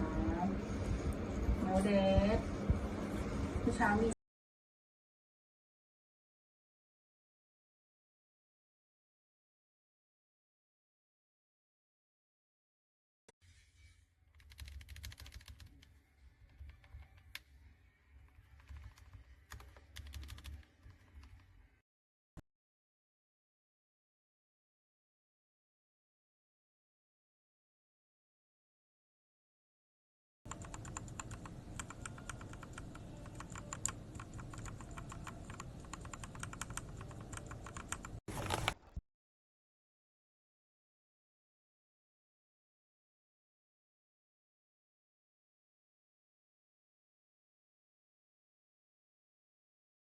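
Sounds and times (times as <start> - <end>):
mechanical keyboard typing: 14.4 - 15.8, 18.3 - 21.4, 30.5 - 39.0.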